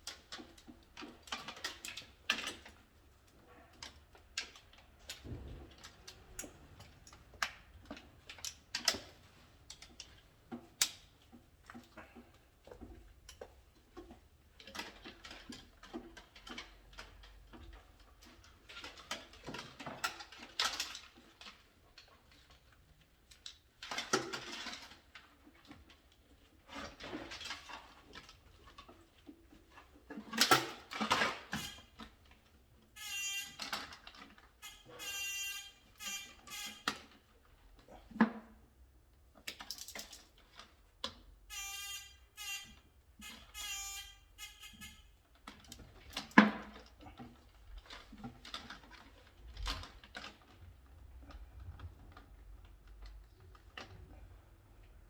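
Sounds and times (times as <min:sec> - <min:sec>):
short squeaky sounds: 0:31.5 - 0:31.9, 0:33.0 - 0:33.8, 0:34.6 - 0:37.0, 0:41.5 - 0:45.2.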